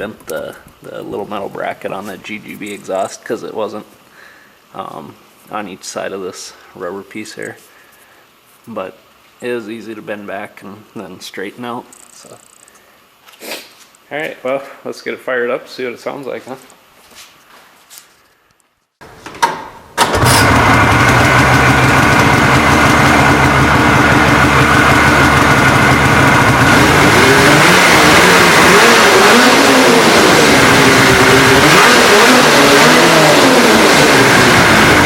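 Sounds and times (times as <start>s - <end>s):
snowmobile engine cranking: 19.2s - 35.0s
snowmobile engine running loudly: 20.2s - 35.0s.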